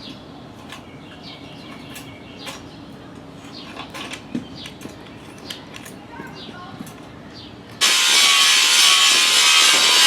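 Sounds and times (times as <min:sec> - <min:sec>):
birds chirping: 0:00.0 - 0:07.8.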